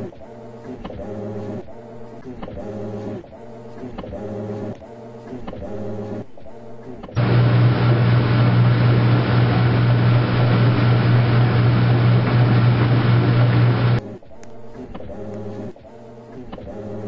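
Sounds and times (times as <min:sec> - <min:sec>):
washing machine humming: 0:07.2 - 0:14.0.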